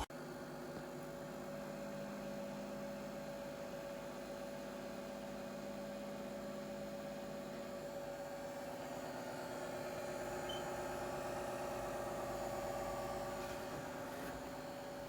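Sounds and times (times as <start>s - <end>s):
toaster oven humming: 0.0s - 15.0s.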